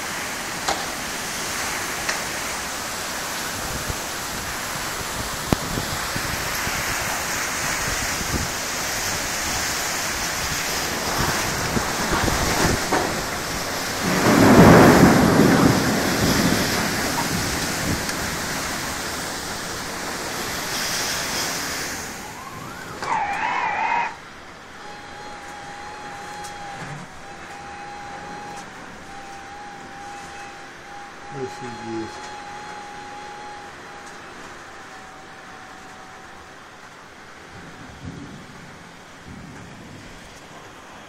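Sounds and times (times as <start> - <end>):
thunder rumbling: 0.0 - 23.5, 24.1 - 41.0
heavy rain falling: 0.0 - 41.0
brief wavering tone: 24.8 - 36.6.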